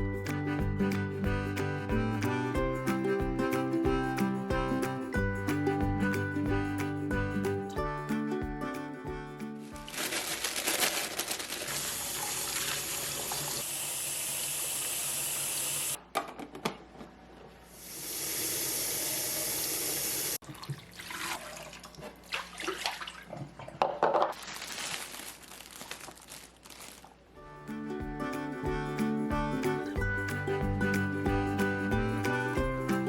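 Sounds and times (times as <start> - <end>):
water splashing: 9.8 - 13.6, 20.4 - 23.8.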